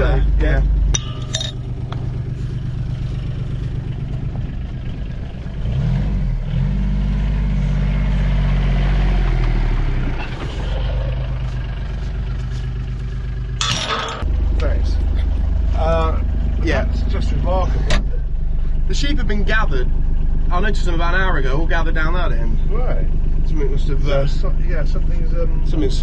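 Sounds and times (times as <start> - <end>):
vehicle engine revving: 1.6 - 13.6.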